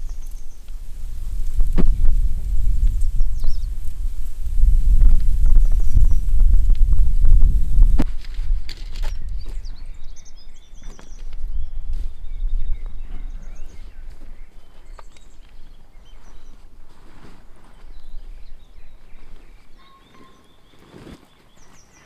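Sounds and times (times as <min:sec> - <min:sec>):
small birds chirping: 0:00.0 - 0:08.0, 0:09.0 - 0:16.7, 0:17.7 - 0:22.0
wind buffeting microphone: 0:00.0 - 0:16.5.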